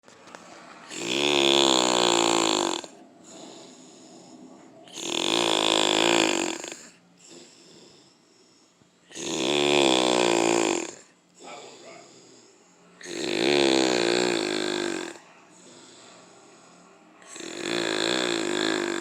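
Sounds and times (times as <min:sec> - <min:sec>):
man snoring: 0:00.9 - 0:08.4, 0:09.1 - 0:19.0
quiet breathing: 0:01.7 - 0:09.2, 0:10.8 - 0:13.2, 0:13.9 - 0:19.0.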